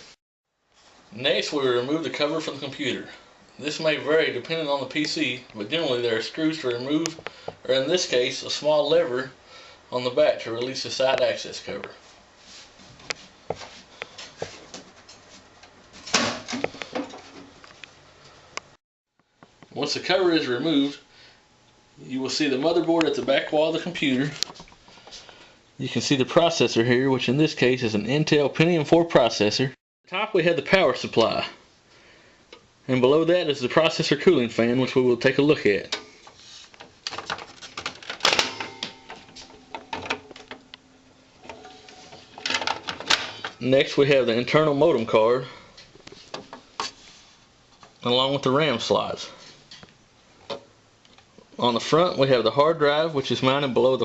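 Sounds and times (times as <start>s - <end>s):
computer parts clicking and knocking: 36.8s - 40.7s, 42.3s - 43.6s.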